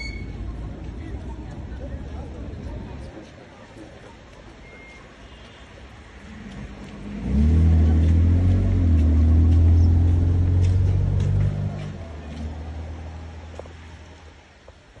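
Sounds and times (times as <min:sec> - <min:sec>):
vehicle engine running: 0:06.4 - 0:13.0.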